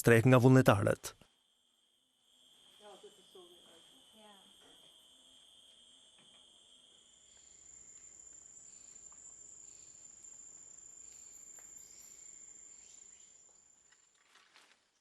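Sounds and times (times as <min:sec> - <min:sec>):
high-pitched insect shrilling: 0:02.5 - 0:09.0
faint ticks: 0:07.3 - 0:09.4.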